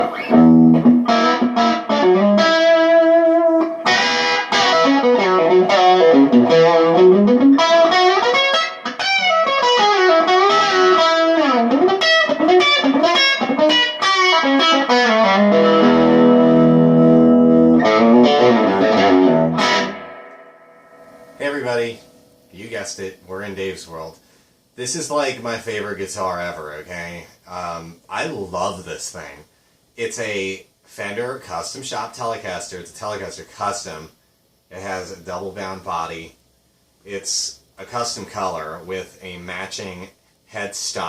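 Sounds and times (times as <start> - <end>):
electric guitar through an amp: 0.0 - 21.4.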